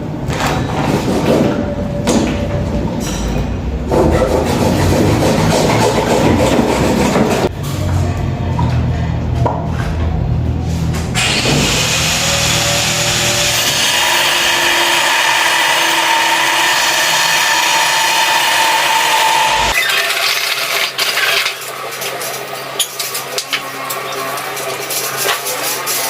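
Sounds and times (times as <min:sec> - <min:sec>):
knocks and scraping: 0:00.2 - 0:11.9
power tool cutting: 0:11.2 - 0:21.5.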